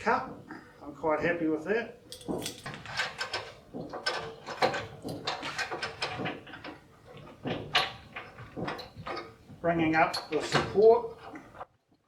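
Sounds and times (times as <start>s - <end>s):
metal parts knocking and scraping: 2.1s - 9.4s.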